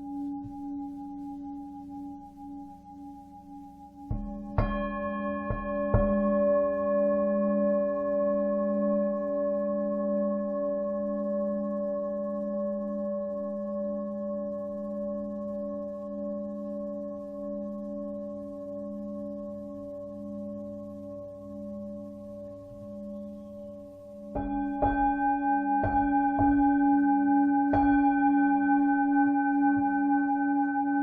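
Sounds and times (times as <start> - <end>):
singing bowl ringing: 0.0 - 31.0.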